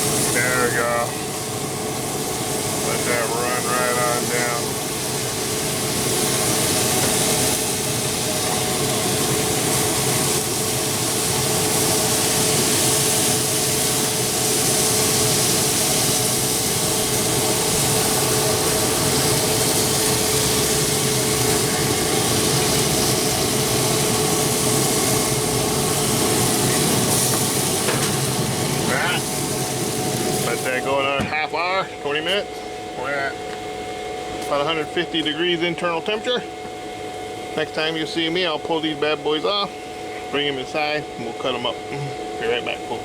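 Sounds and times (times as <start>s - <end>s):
grill fan humming and whining: 0.0s - 43.0s.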